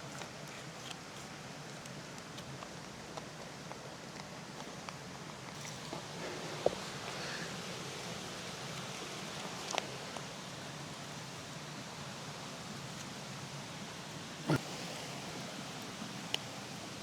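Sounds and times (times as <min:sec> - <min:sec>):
creek rushing: 0:14.4 - 0:17.0.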